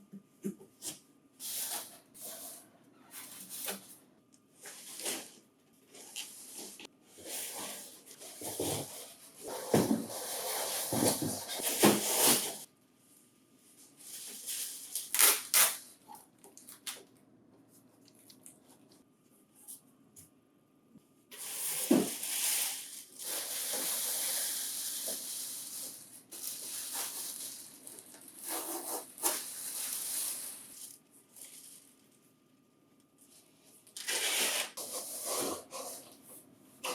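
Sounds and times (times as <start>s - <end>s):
cardboard and plastic rustling: 6.0s - 12.7s, 21.3s - 32.1s.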